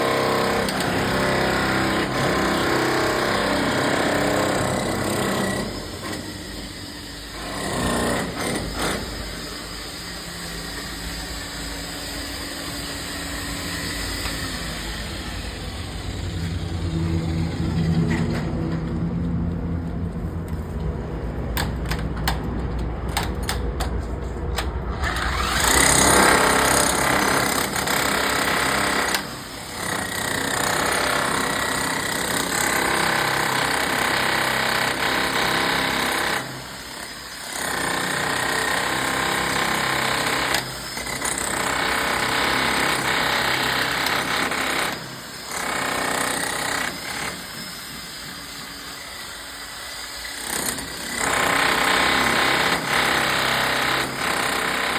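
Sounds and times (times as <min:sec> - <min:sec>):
hammer drill boring into concrete: 0:00.0 - 0:15.8, 0:25.0 - 0:54.9.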